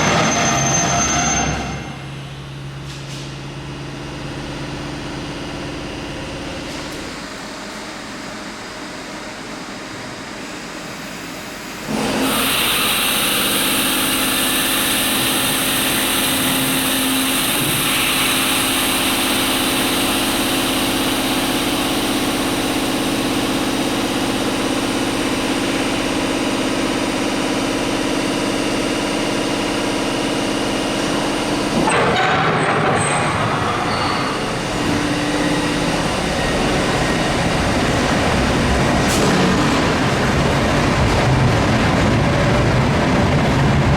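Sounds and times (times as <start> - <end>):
locomotive equipment whining drone: 32.9 - 43.9.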